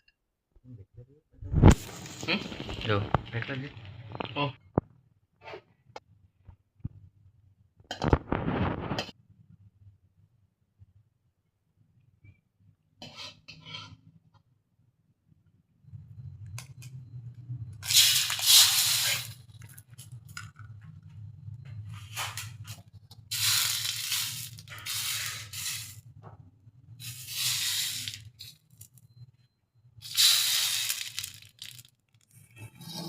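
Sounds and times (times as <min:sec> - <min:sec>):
crunching while eating: 0:01.8 - 0:04.4, 0:30.0 - 0:32.4
low steady hum: 0:14.8 - 0:18.4.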